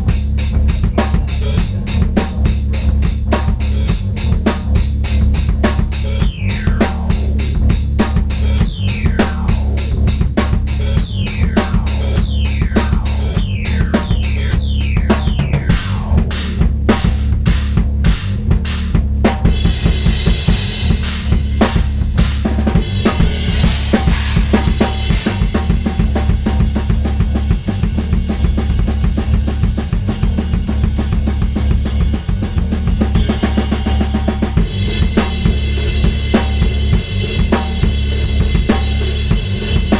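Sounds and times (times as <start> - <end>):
drum kit groove: 0.0 - 39.9
backing audio samples: 5.2 - 17.8
falling sweeps: 6.2 - 16.6.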